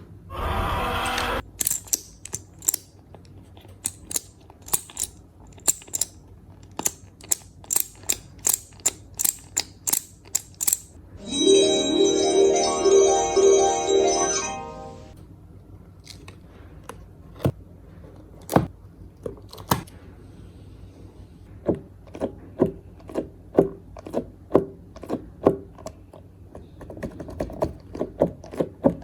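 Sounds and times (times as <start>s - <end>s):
electronic chime tune: 11.2s - 15.2s.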